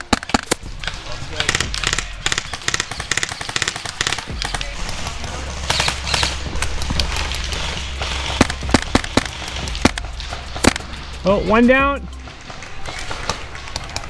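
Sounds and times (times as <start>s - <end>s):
airsoft guns firing: 0.0s - 14.0s
steady low rumble: 4.2s - 12.7s.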